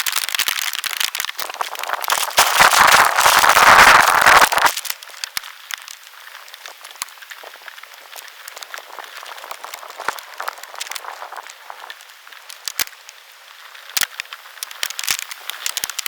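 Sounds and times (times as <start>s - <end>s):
raindrops crackling and ticking: 0.0s - 16.0s
rain hissing: 1.3s - 5.2s, 6.4s - 14.5s.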